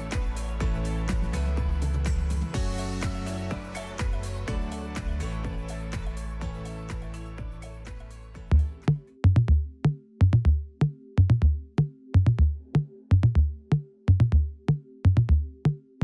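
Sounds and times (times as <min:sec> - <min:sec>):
held low synth notes: 0:00.0 - 0:09.8
electronic drum machine beat: 0:00.0 - 0:15.8.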